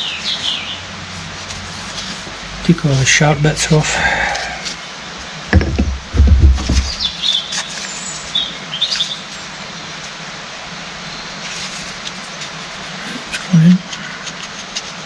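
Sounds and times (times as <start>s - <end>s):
steady background hiss: 0.0s - 15.0s
dull heavy thumps: 5.5s - 7.2s.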